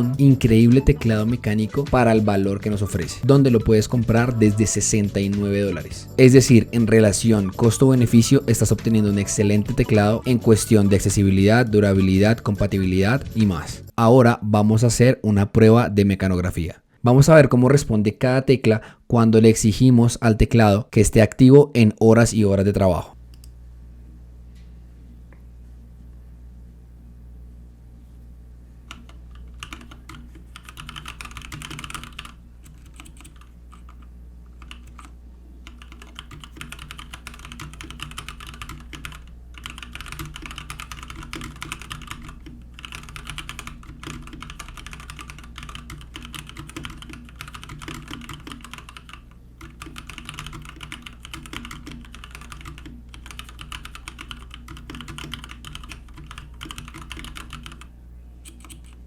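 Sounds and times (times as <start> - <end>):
mechanical keyboard typing: 28.9 - 59.0.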